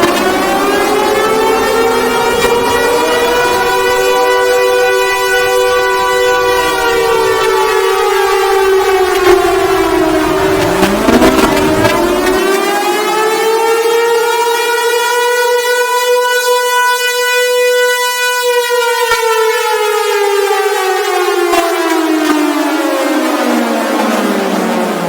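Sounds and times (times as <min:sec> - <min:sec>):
wailing warning siren: 0:00.0 - 0:25.0
low rumble: 0:06.4 - 0:12.4.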